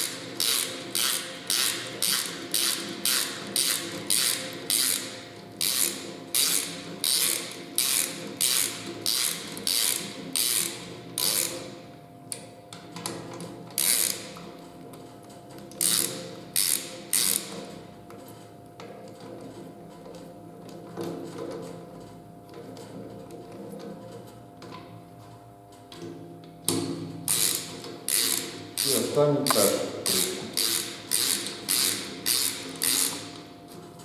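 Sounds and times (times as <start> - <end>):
ratchet wrench clicking: 0.0 - 11.6, 13.8 - 14.2, 15.8 - 17.6, 27.3 - 33.4.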